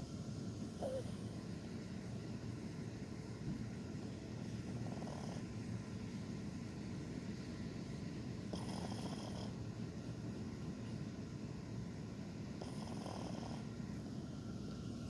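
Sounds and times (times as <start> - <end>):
dog snoring: 0.8 - 1.5, 4.4 - 5.9, 8.4 - 9.9, 12.5 - 13.9.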